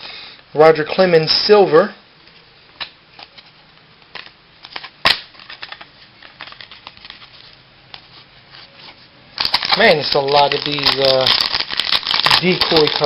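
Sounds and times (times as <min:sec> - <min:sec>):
trading cards clicking and rustling: 0:02.8 - 0:08.2, 0:08.8 - 0:13.0.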